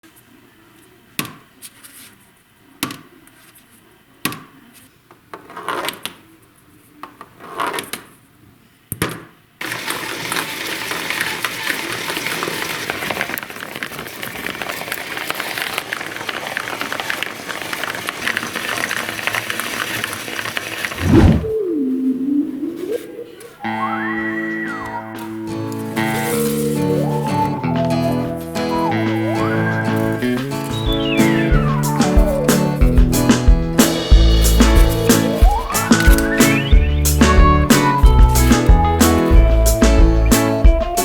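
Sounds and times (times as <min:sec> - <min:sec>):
balls clattering on cardboard: 0:12.8 - 0:20.9.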